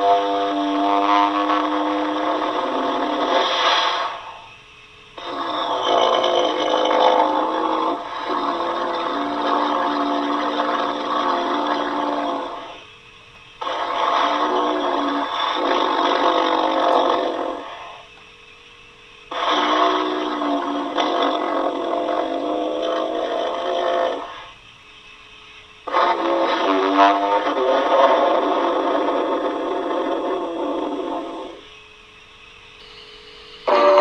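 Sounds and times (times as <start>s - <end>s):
growling dinosaur calls: 13.6s - 17.8s, 19.4s - 24.4s.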